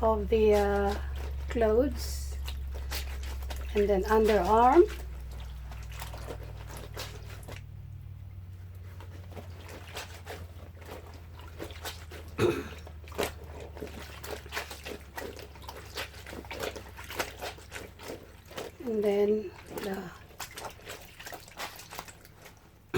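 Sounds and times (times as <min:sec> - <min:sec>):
steady low hum: 0:00.0 - 0:21.8
soapy clothes squishing and rubbing: 0:00.0 - 0:22.9
water dripping: 0:00.0 - 0:22.9
wet slap: 0:02.4 - 0:07.7.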